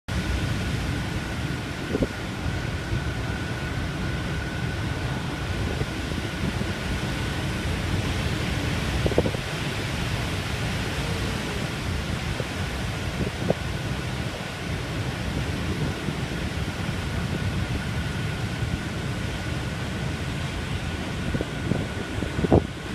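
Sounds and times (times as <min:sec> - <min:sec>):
strong wind on microphone: 0:00.1 - 0:22.9.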